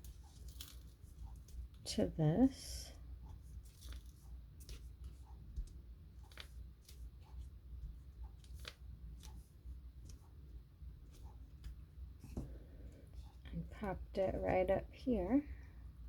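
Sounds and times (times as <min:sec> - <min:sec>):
low steady hum: 0:00.0 - 0:16.0
card stock clicking and rustling: 0:03.6 - 0:10.3.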